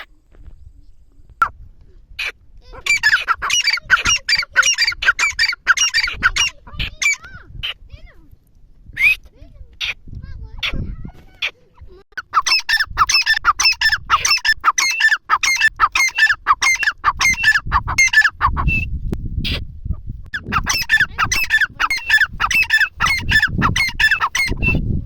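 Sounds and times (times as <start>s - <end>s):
bird calling shrill notes: 12.2s - 18.9s, 20.4s - 24.8s.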